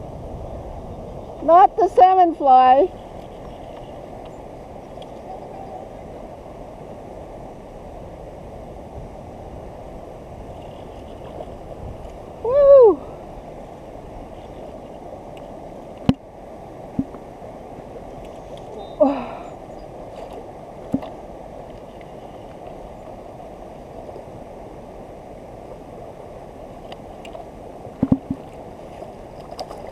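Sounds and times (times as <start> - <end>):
creek water flowing: 0.0 - 29.9
person whooping: 12.4 - 13.1.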